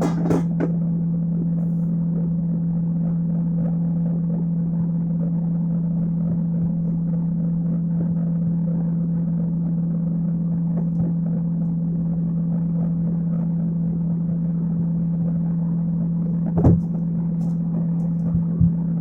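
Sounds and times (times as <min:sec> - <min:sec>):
low hum: 0:00.0 - 0:19.0
short knock: 0:16.6 - 0:17.0.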